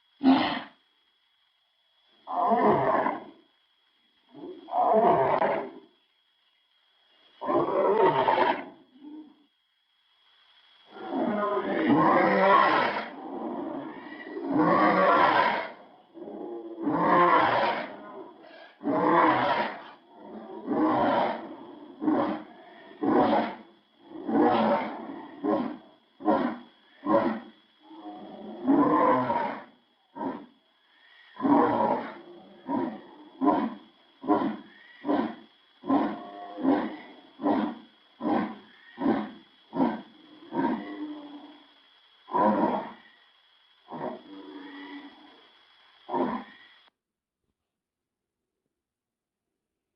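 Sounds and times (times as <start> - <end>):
lion roaring: 10.9 - 30.5, 31.4 - 41.4.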